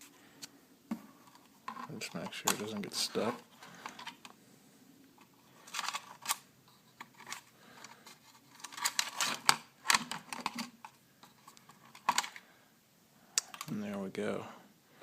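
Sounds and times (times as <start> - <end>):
plastic clicks and snaps: 13.4 - 13.8.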